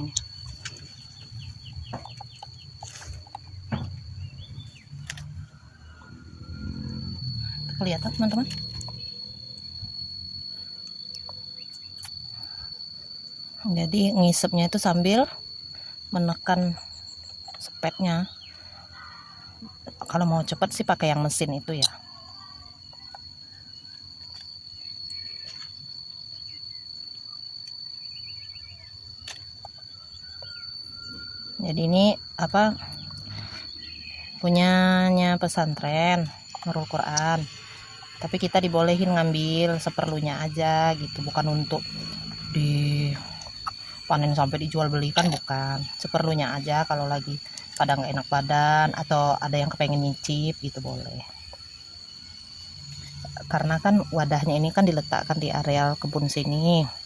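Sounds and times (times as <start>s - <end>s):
small bird chirping: 0.0s - 12.8s, 22.8s - 46.7s
high-pitched insect drone: 0.0s - 57.0s.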